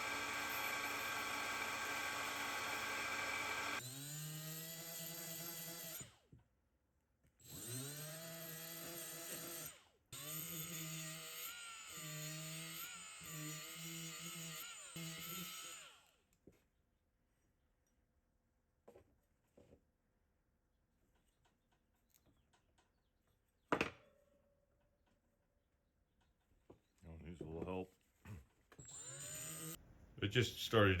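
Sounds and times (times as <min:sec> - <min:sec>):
electric drill motor: 0:00.0 - 0:06.1, 0:07.4 - 0:16.2, 0:28.8 - 0:29.8.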